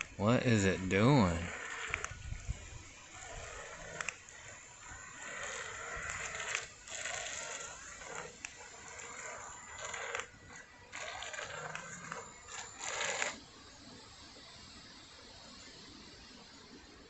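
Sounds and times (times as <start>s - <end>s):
toy boat propeller churning water: 0.0s - 13.4s.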